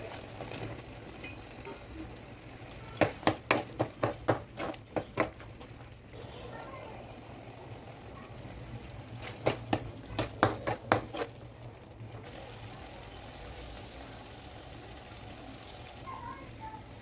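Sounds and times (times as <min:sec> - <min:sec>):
curry simmering hiss: 0:00.0 - 0:17.0
utensil knocking against pan: 0:03.0 - 0:05.4, 0:09.4 - 0:11.2.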